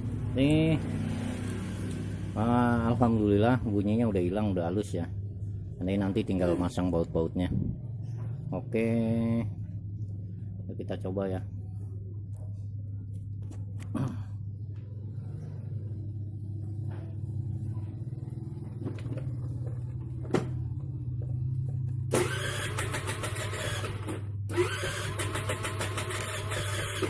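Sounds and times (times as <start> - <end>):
scooter electric starter cranking: 22.1 - 27.0.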